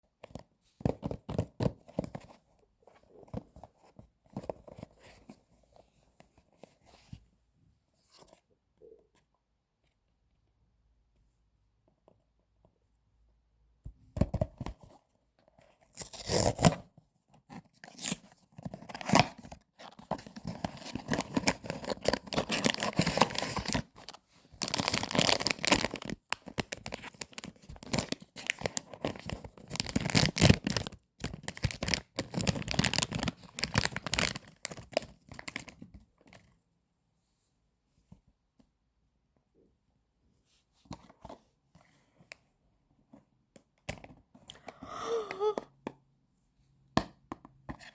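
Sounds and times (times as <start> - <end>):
packaging tearing and crinkling: 20.8 - 23.9, 24.6 - 28.6, 29.2 - 34.8.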